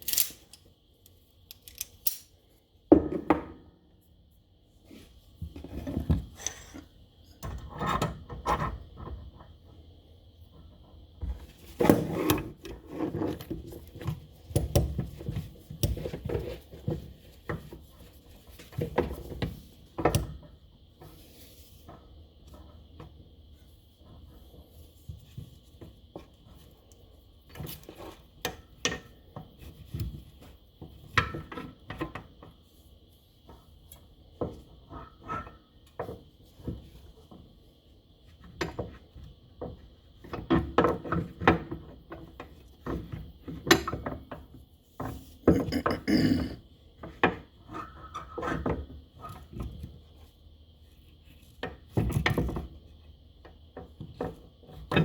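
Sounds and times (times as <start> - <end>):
metal parts clinking: 0.0 - 0.6, 1.5 - 2.3.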